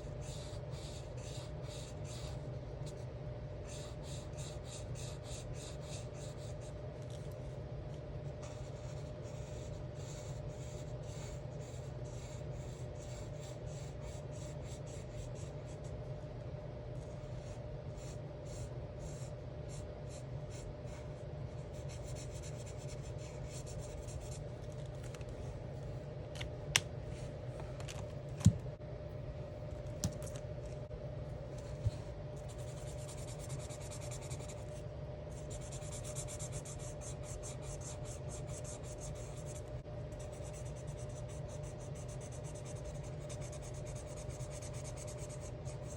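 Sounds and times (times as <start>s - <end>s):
steady low hum: 0.0s - 45.9s
marker scratching on paper: 0.2s - 3.0s, 3.6s - 6.7s, 8.4s - 15.9s, 17.0s - 24.5s, 31.6s - 45.9s.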